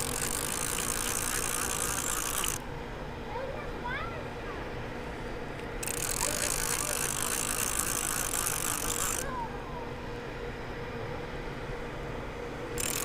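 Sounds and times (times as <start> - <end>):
fishing reel buzzing: 0.0 - 2.6, 5.8 - 9.3, 12.8 - 13.0
steady hum: 0.0 - 13.0.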